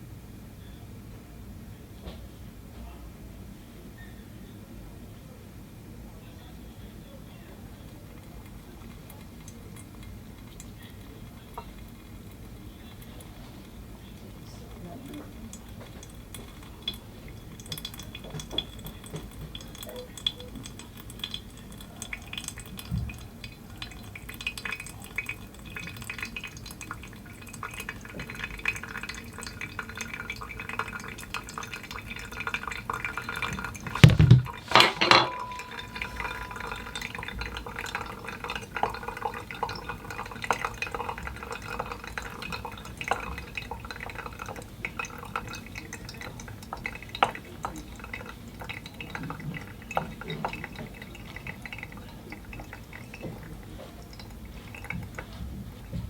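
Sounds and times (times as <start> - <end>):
coffee dripping and trickling: 6.2 - 56.0
glassware and utensils clinking: 33.3 - 39.8.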